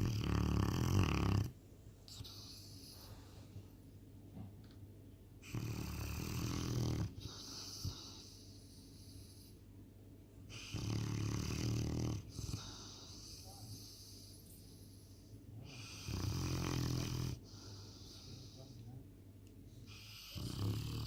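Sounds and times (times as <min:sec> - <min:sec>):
puppy snoring: 0:00.0 - 0:03.2, 0:05.4 - 0:09.6, 0:10.5 - 0:18.8, 0:19.9 - 0:21.0
quiet breathing: 0:02.0 - 0:03.9, 0:07.0 - 0:09.8, 0:12.2 - 0:20.9.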